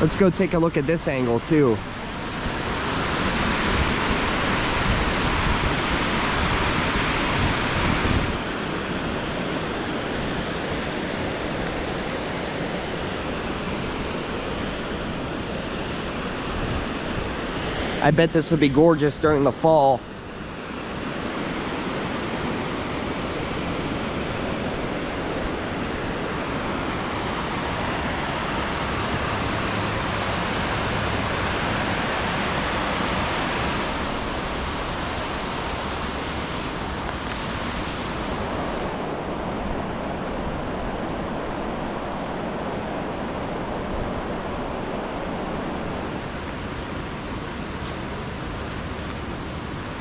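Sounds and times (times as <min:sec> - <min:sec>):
waterfall rushing: 0:00.0 - 0:08.9, 0:23.3 - 0:50.0.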